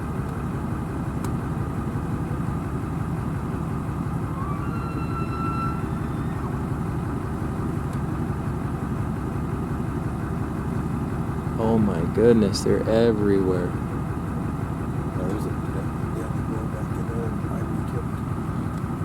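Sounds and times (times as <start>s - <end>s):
vehicle engine idling: 0.0s - 19.0s
faint high whistle: 4.3s - 6.6s.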